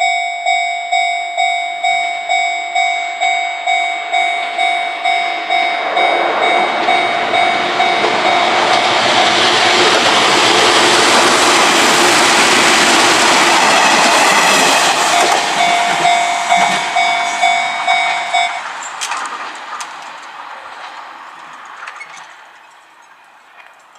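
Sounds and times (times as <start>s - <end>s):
level crossing alarm ringing: 0.0s - 19.0s
train passing over crossing: 0.0s - 23.9s.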